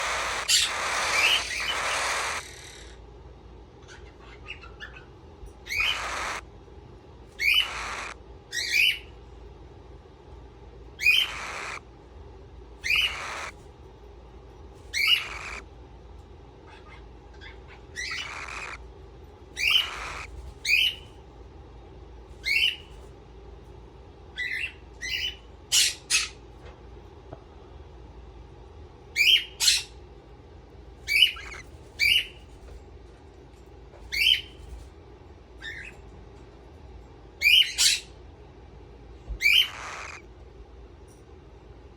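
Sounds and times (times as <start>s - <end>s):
parrot squawking: 0.0s - 3.0s, 3.8s - 6.5s, 7.4s - 9.1s, 11.0s - 11.8s, 12.8s - 13.6s, 14.9s - 15.7s, 16.6s - 18.8s, 19.6s - 21.1s, 22.4s - 22.9s, 24.4s - 26.4s, 29.2s - 30.0s, 31.1s - 32.4s, 34.1s - 34.6s, 37.4s - 38.2s, 39.4s - 40.3s.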